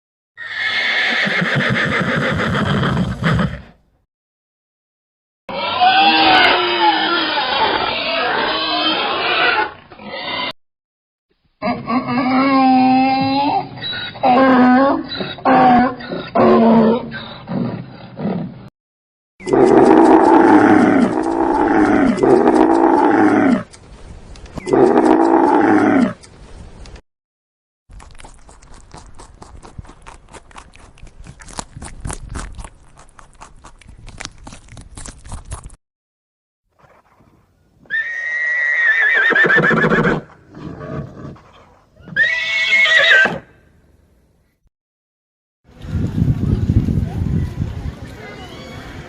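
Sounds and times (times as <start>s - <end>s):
horse whinnying: 0.4s - 3.8s, 5.5s - 10.6s, 37.8s - 43.5s.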